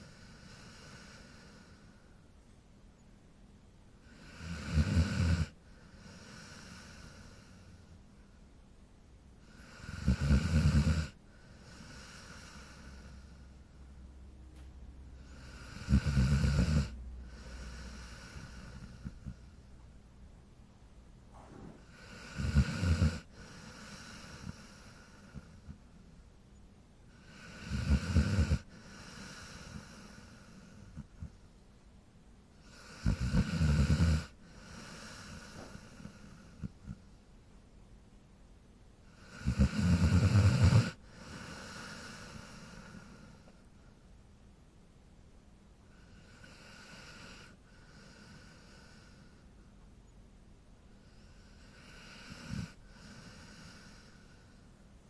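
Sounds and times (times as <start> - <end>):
dog snoring: 0.0 - 2.0, 4.0 - 7.8, 9.4 - 13.4, 15.2 - 19.6, 21.4 - 25.8, 27.1 - 31.4, 32.6 - 37.1, 39.1 - 43.6, 45.9 - 49.4, 51.0 - 54.6
dog breathing softly: 34.4 - 37.0.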